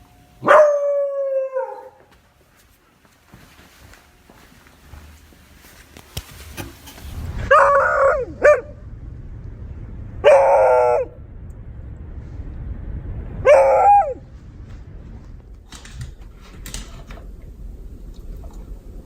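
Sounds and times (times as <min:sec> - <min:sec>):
dog yelp: 0:00.4 - 0:02.0
dog barking: 0:00.4 - 0:02.1.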